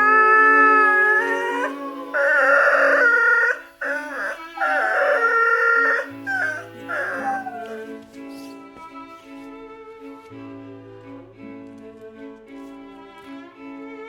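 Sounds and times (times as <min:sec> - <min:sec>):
autotuned dog howls: 0:00.0 - 0:08.0
backing music: 0:00.0 - 0:13.4.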